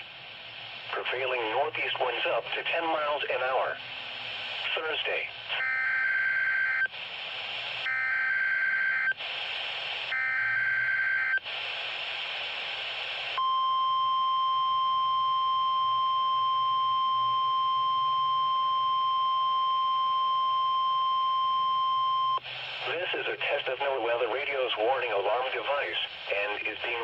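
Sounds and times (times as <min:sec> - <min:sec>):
radio hiss: 0:00.0 - 0:05.7, 0:06.9 - 0:08.0, 0:09.1 - 0:10.3, 0:11.4 - 0:13.4, 0:22.3 - 0:27.0.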